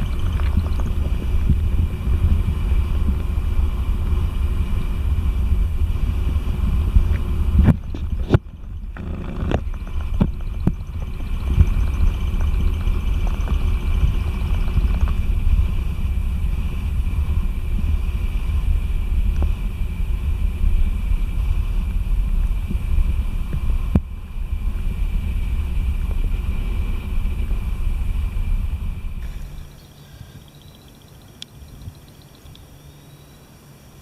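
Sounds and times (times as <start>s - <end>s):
wind buffeting microphone: 0.0s - 33.4s
faint high-pitched tone: 29.2s - 33.6s.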